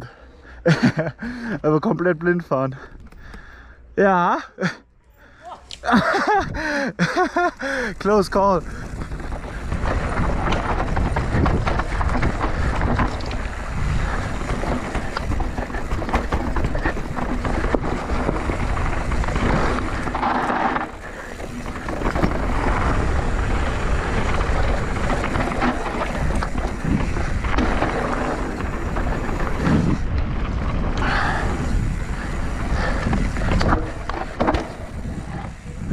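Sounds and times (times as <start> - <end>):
bike tyres on dirt trail: 5.0 - 35.9
wind buffeting microphone: 7.6 - 35.9
bike knocks and rattles: 8.3 - 35.9.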